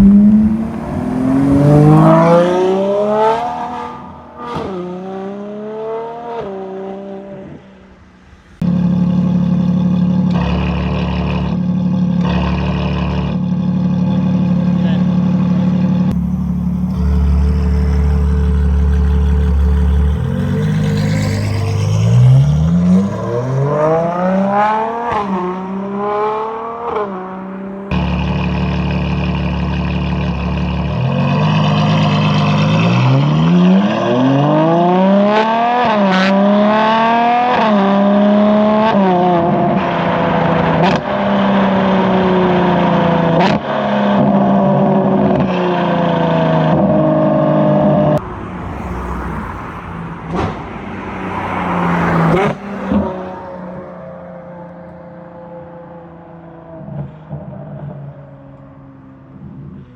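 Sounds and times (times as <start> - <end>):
exhaust cracks: 0.0 - 2.6, 16.1 - 22.6
sports car engine accelerating: 0.0 - 7.6, 8.6 - 59.9.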